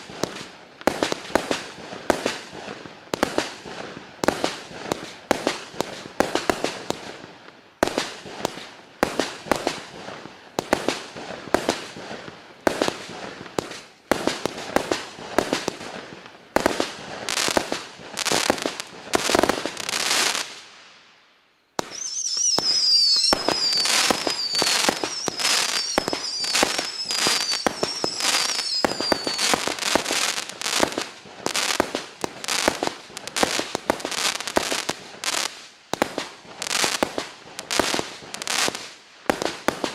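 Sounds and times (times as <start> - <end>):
fireworks shots crackling: 0.0 - 21.0, 21.8 - 39.9
high wavering whistle: 21.8 - 29.7.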